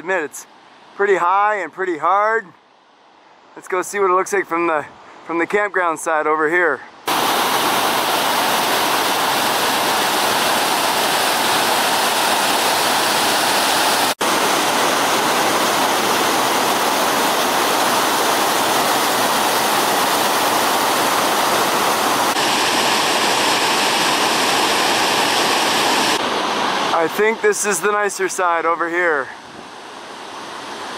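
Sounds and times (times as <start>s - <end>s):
waterfall roaring: 7.1s - 28.8s.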